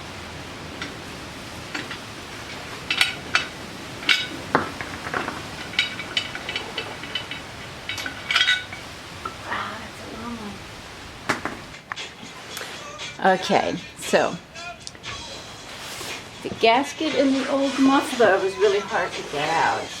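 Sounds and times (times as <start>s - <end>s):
steady hiss: 0.0s - 20.0s
metal tools clinking: 1.7s - 9.4s.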